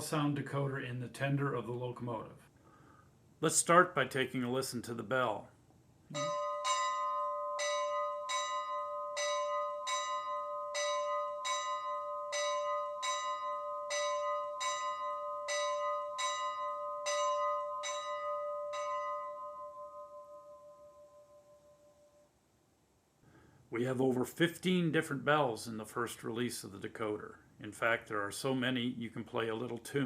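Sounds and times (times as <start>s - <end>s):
locomotive bell ringing: 6.1s - 22.1s.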